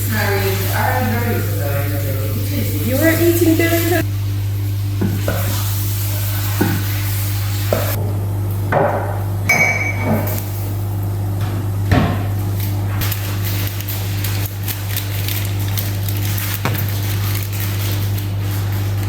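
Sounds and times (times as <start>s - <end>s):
kitchen utensils clattering: 9.5s - 10.5s.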